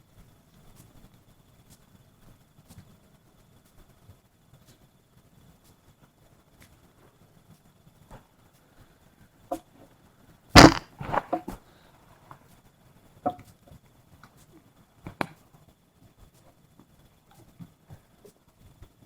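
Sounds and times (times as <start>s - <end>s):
sharp knocks: 10.6s - 11.5s.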